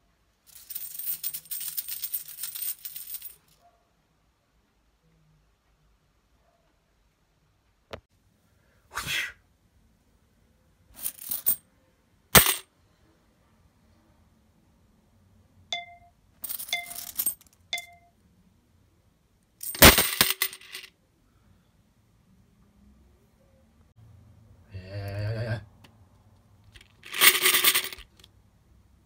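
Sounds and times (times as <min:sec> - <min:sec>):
short metallic dings: 0:15.7 - 0:18.1.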